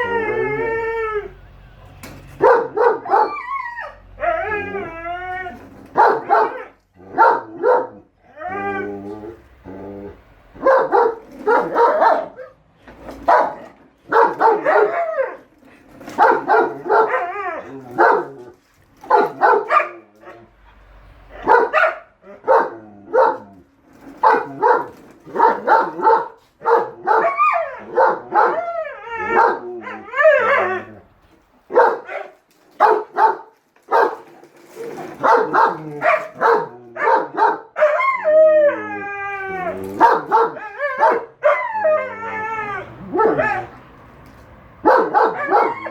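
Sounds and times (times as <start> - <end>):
dog howling: 0.0 - 1.4, 2.7 - 6.8, 8.3 - 10.2, 16.3 - 18.4, 27.0 - 31.1, 35.2 - 43.7, 45.2 - 45.9
dog barking: 2.4 - 3.4, 5.9 - 8.0, 10.6 - 12.6, 13.2 - 15.4, 16.1 - 17.3, 17.9 - 18.4, 19.0 - 20.0, 21.3 - 23.5, 24.1 - 28.6, 29.3 - 29.7, 31.7 - 34.3, 35.2 - 38.2, 40.0 - 41.7, 43.0 - 43.8, 44.8 - 45.9.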